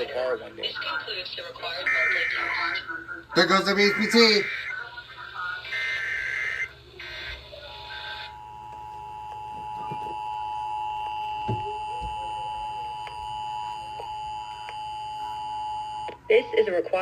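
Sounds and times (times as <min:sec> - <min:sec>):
burst of data noise: 0:03.4 - 0:04.8.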